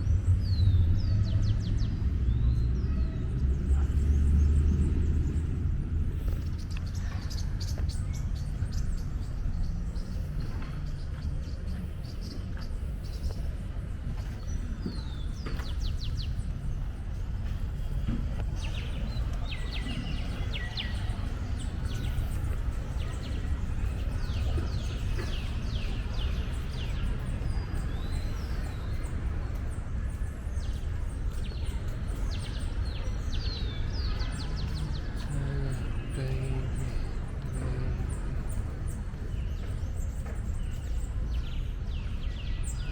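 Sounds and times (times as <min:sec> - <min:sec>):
low urban background rumble: 0:00.0 - 0:42.9
small birds chirping and trilling: 0:00.0 - 0:42.9.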